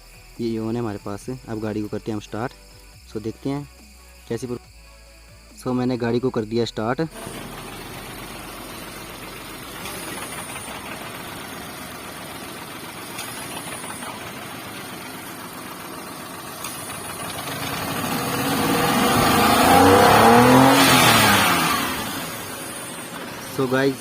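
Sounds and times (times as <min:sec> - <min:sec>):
car engine idling rough: 0:07.1 - 0:24.0
engine revving: 0:07.1 - 0:24.0.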